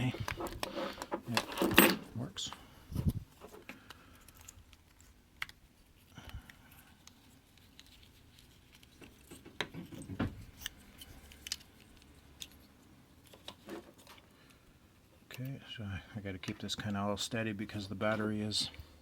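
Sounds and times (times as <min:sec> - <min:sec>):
plastic key fob clicking and scraping: 0:00.0 - 0:01.7, 0:03.3 - 0:14.3.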